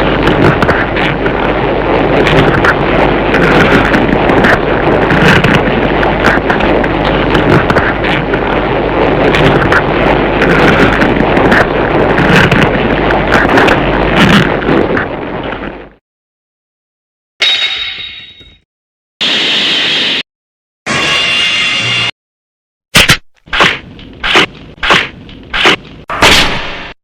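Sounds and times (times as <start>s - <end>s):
rumbling roar with crackles: 0.0s - 16.0s.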